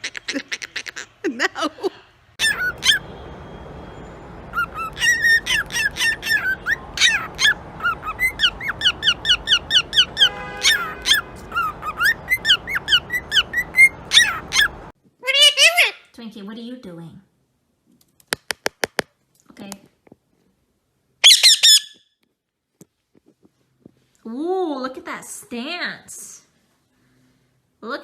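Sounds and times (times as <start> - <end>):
parrot chirping and whistling: 2.4 - 14.9, 21.2 - 22.0.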